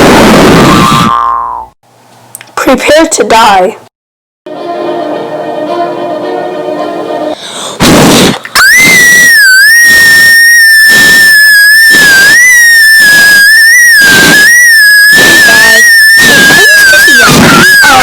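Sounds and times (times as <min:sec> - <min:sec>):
burst of noise: 0:00.0 - 0:01.2, 0:07.8 - 0:18.0
steady music: 0:04.5 - 0:07.4
distorted high-pitched shriek: 0:07.8 - 0:18.0.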